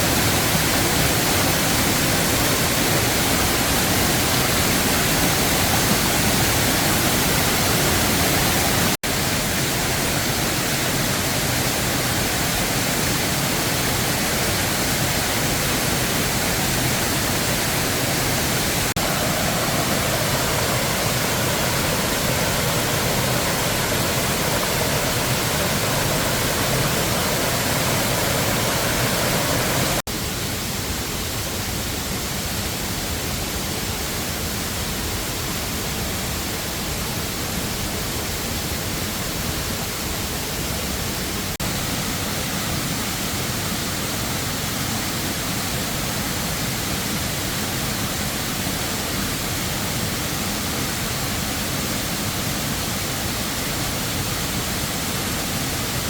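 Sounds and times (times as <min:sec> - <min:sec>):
waterfall roaring: 0:00.0 - 0:56.0.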